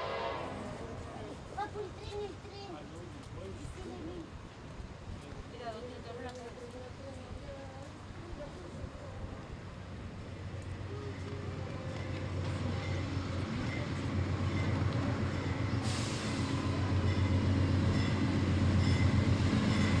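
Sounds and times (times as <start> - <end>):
locomotive engine drone: 8.8 - 20.0
air hiss: 15.8 - 16.6.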